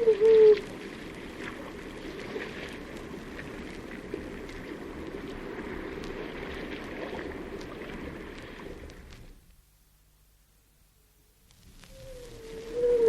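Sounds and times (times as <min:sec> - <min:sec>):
seal calls: 0:00.0 - 0:00.7, 0:11.8 - 0:13.0
water washing in a cave: 0:00.0 - 0:09.4.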